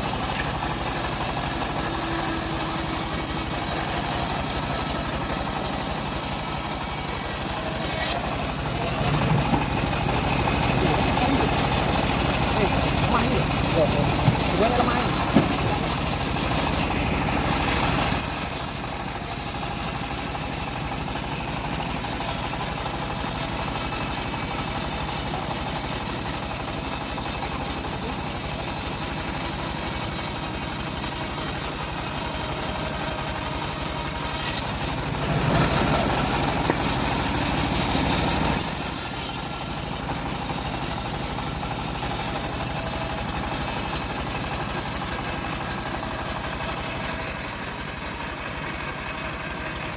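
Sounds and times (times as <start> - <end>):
engine-driven saw cutting wood: 0.0 - 49.9.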